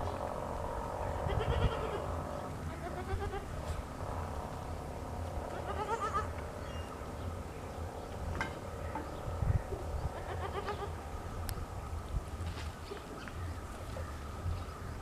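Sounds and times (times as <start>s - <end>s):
steady low rumble: 0.0s - 15.0s
goat bleating: 1.2s - 2.1s, 2.7s - 3.6s, 5.5s - 6.3s, 10.2s - 11.0s.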